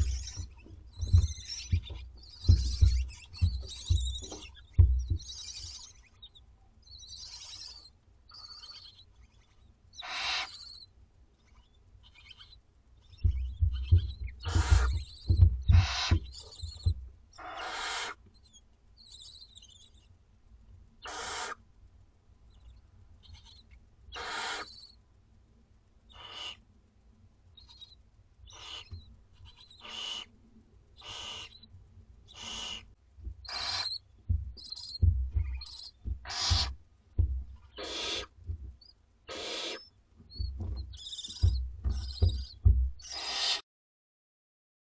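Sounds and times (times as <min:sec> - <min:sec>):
low bumps: 0:00.0 - 0:05.7, 0:13.2 - 0:17.2, 0:33.2 - 0:38.8, 0:40.2 - 0:43.1
barn owlets hissing: 0:00.0 - 0:06.0, 0:10.0 - 0:10.8, 0:13.3 - 0:18.2, 0:21.1 - 0:21.6, 0:24.2 - 0:24.8, 0:26.2 - 0:26.6, 0:28.5 - 0:28.9, 0:29.6 - 0:30.3, 0:31.0 - 0:31.6, 0:32.3 - 0:34.0, 0:34.6 - 0:36.8, 0:37.7 - 0:39.9, 0:40.9 - 0:43.6.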